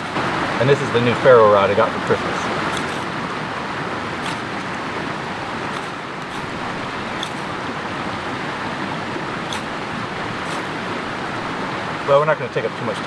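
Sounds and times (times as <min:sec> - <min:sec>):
ferro rod scraping: 0:00.0 - 0:00.6, 0:01.8 - 0:03.4, 0:04.0 - 0:11.5
mountain creek rushing: 0:00.0 - 0:13.0.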